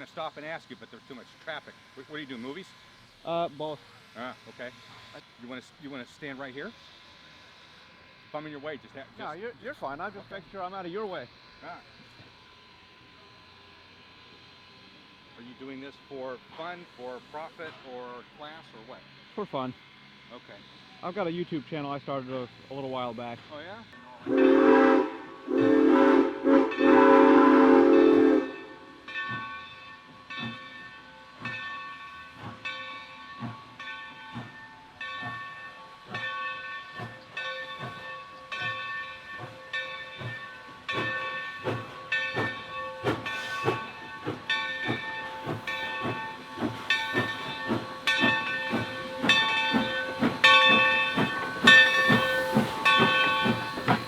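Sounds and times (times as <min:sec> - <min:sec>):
steam locomotive chuffing: 0:00.0 - 0:54.0
steam locomotive whistle: 0:24.0 - 0:29.1.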